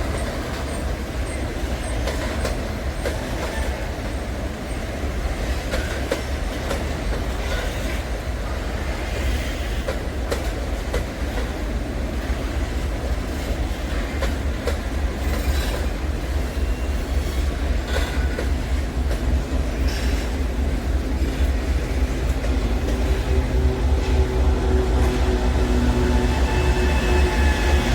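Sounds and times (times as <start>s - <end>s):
freight train rumbling: 0.0s - 27.9s
wheels clicking over rail joints: 16.7s - 26.3s
high wheel squeals: 24.2s - 27.9s.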